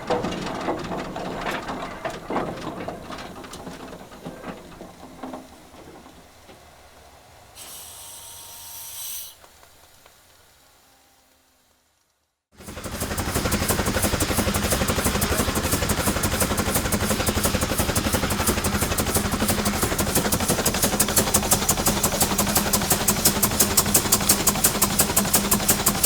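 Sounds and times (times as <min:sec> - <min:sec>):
tractor clattering and knocking: 0:00.0 - 0:07.4, 0:12.6 - 0:26.0
sharp burst of hiss: 0:07.6 - 0:12.0.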